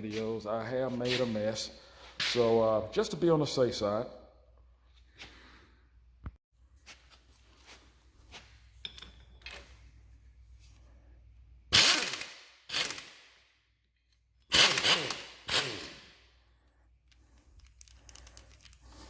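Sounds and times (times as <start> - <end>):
clinks of parts handled: 8.7 - 9.9, 17.0 - 19.0
power tool driving a socket: 11.8 - 13.2, 14.5 - 16.1.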